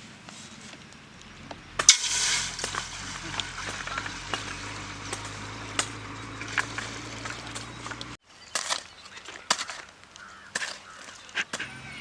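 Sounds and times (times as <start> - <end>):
bird chirps: 2.6 - 12.0.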